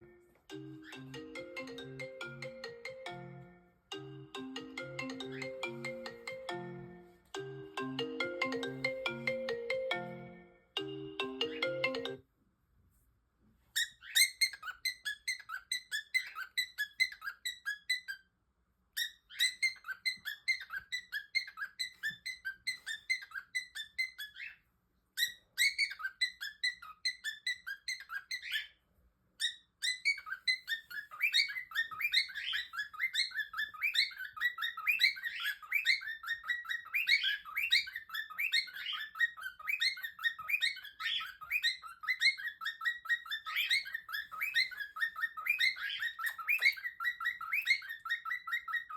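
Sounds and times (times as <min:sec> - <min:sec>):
songbird chirping trills: 0:00.0 - 0:12.2, 0:29.4 - 0:48.9.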